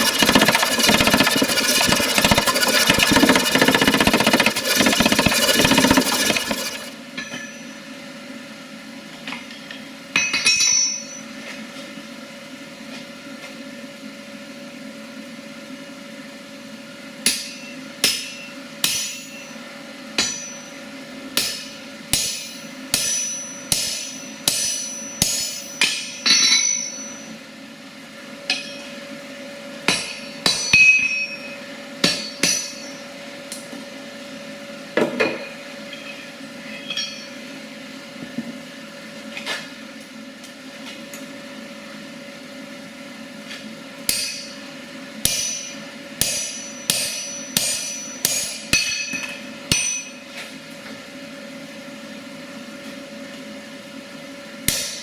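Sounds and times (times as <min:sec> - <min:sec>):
steady hum: 0:00.0 - 0:07.0
hammer ringing on anvil: 0:07.2 - 0:07.9, 0:10.2 - 0:11.3, 0:17.3 - 0:19.6, 0:20.2 - 0:20.8, 0:21.4 - 0:27.4, 0:28.5 - 0:29.0, 0:29.9 - 0:33.1, 0:35.9 - 0:37.4, 0:44.1 - 0:44.6, 0:45.2 - 0:50.3.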